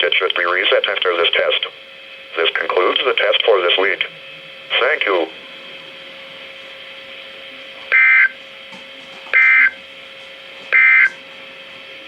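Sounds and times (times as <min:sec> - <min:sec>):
steady hiss and hum: 0:00.0 - 0:12.0
digital data tone bursts: 0:07.9 - 0:08.3, 0:09.4 - 0:09.8, 0:10.8 - 0:11.1.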